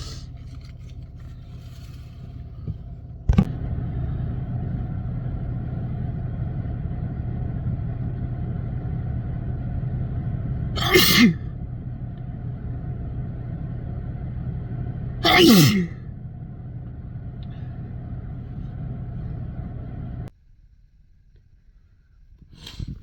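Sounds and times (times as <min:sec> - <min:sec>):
low rumble and hum: 0:00.0 - 0:23.0
person sneezing: 0:10.8 - 0:11.4, 0:15.2 - 0:16.0.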